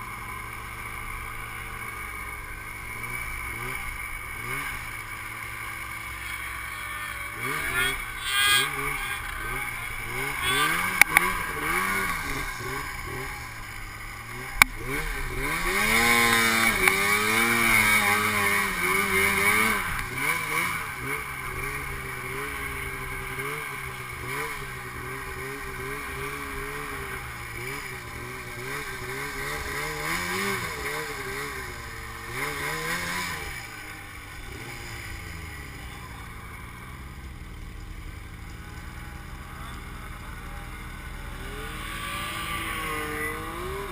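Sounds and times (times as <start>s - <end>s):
snowmobile engine revving: 0.0s - 43.9s.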